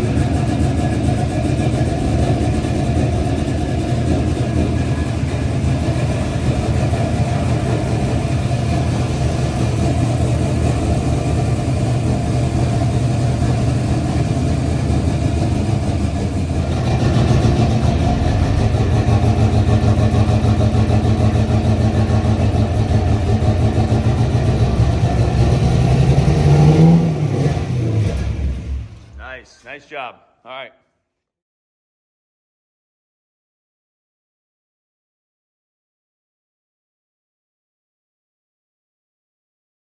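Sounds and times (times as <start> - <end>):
engine idling: 0.0 - 29.6.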